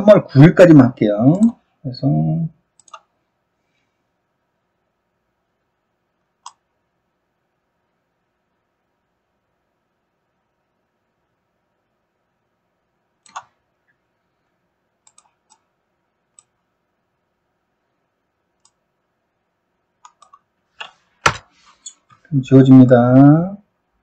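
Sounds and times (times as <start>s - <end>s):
mouse and keyboard clicks: 2.8s - 3.1s, 13.2s - 13.6s, 15.0s - 15.7s, 20.0s - 22.2s.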